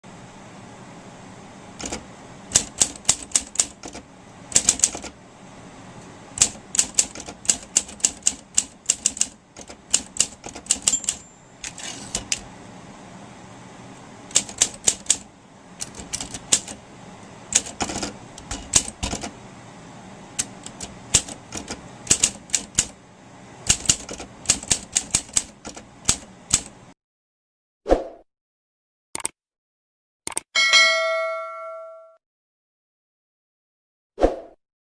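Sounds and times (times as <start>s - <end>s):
typewriter keys clacking: 1.8s - 5.1s, 6.4s - 12.4s, 14.3s - 15.2s, 15.8s - 16.8s, 17.5s - 19.3s, 20.4s - 22.9s, 23.7s - 26.7s.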